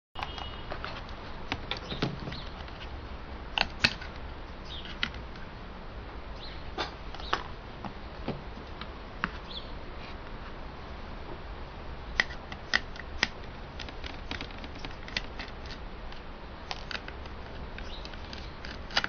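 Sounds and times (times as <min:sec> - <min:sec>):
small plastic parts clicking: 0:12.2 - 0:19.0.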